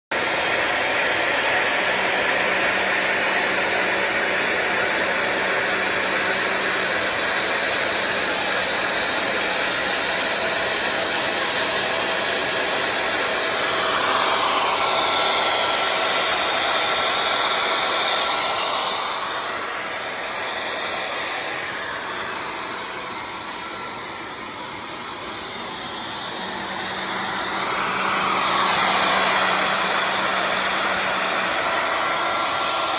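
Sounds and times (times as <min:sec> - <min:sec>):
router motor whine: 0:00.1 - 0:32.9
spindle air noise: 0:00.1 - 0:32.9.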